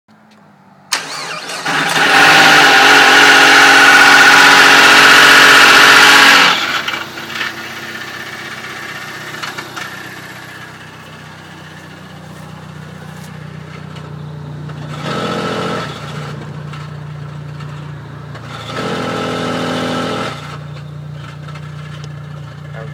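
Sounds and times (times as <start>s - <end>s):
car engine starting and idling: 0.2s - 22.9s
high many-toned whine: 5.4s - 18.8s.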